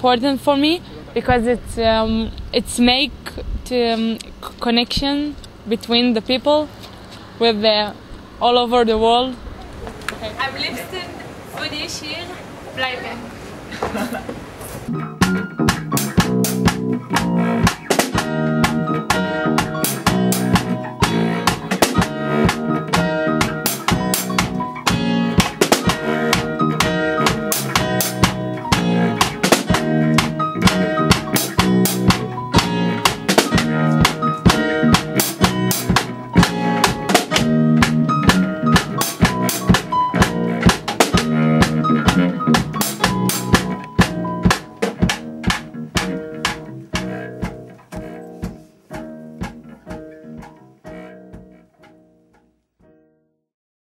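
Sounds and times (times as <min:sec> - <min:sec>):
instrumental music with drum kit: 0:14.9 - 0:52.5.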